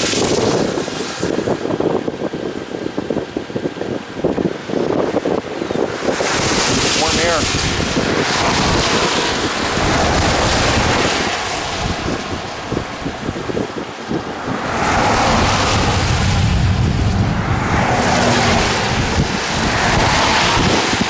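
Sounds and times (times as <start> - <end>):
gusty wind on microphone: 0.0 - 21.0.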